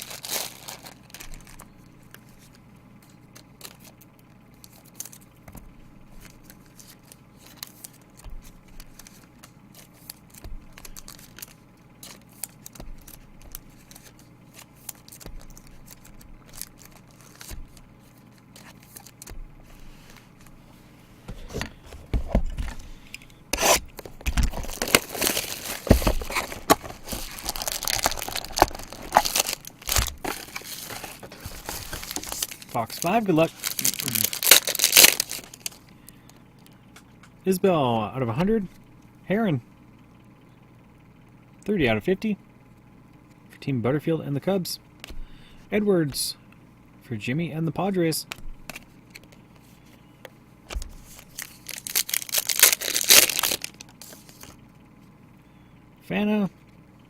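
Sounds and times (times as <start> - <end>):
plastic wrap crinkling and tearing: 0.0 - 1.7, 6.2 - 17.8, 23.6 - 35.9, 51.0 - 54.6
cards handled with faint ticks: 1.2 - 19.5.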